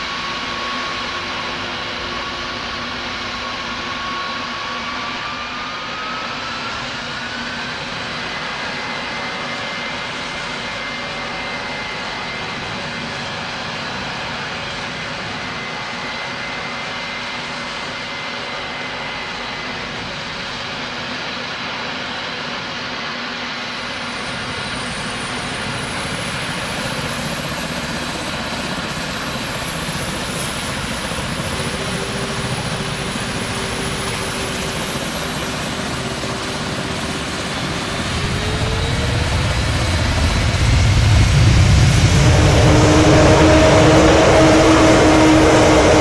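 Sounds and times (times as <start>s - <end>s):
jet engines whining: 0.0s - 46.0s
deep engine tone: 37.2s - 46.0s
low rumble: 37.8s - 46.0s.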